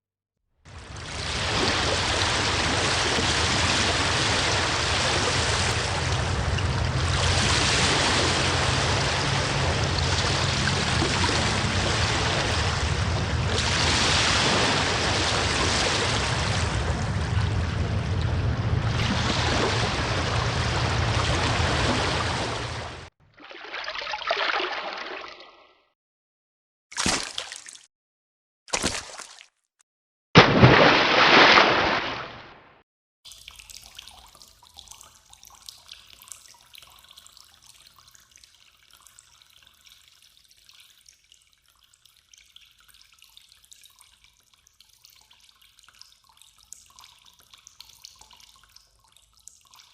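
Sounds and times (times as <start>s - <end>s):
rushing water: 0.7s - 25.0s, 30.4s - 32.4s
water splashing: 0.8s - 25.6s, 27.0s - 27.9s, 28.7s - 29.6s, 30.4s - 32.6s.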